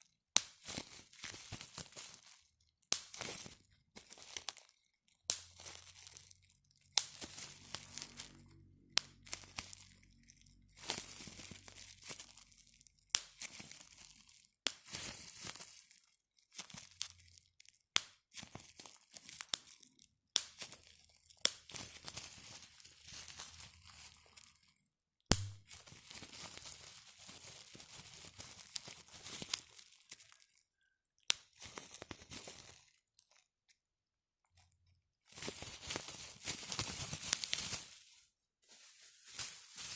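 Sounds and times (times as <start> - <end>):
bubble wrap crinkling and popping: 0.0 - 39.9.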